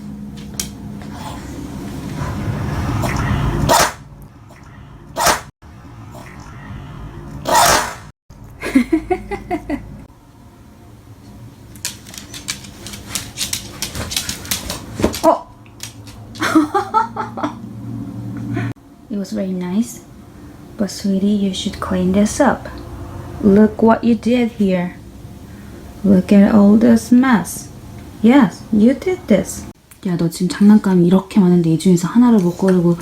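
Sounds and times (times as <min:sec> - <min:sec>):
dog sneezing: 0:03.0 - 0:04.0, 0:05.2 - 0:05.5, 0:07.5 - 0:08.1.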